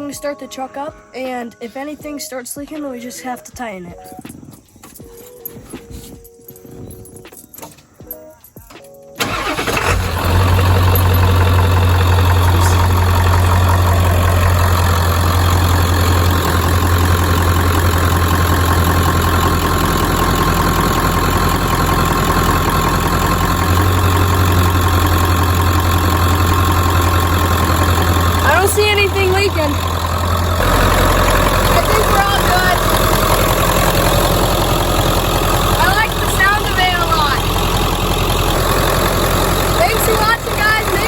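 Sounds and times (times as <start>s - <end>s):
diesel engine starting and idling: 9.2s - 41.0s.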